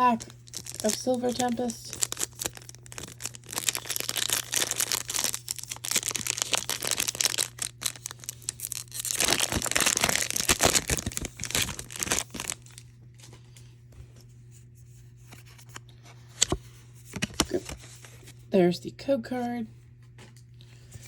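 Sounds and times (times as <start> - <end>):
foil wrapper tearing and crinkling: 0.0 - 12.9
steady low hum: 0.0 - 21.0.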